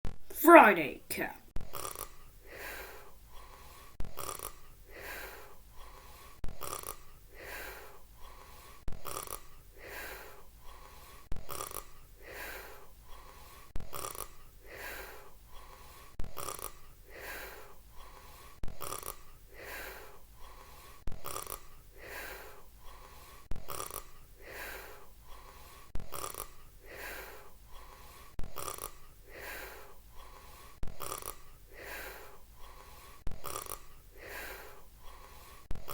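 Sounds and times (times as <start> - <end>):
cartoon snoring: 31.0 - 31.4, 33.3 - 33.9.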